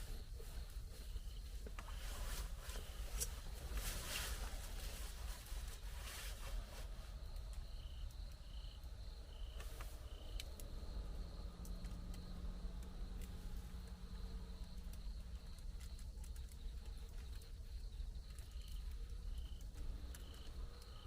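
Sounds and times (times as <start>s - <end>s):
rustling and clicks: 0.0s - 8.4s
insects calling: 0.0s - 21.0s.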